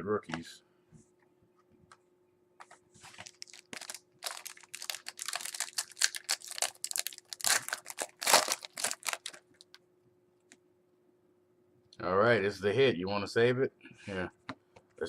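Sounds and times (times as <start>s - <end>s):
wrapper crinkling and tearing: 3.1s - 9.8s.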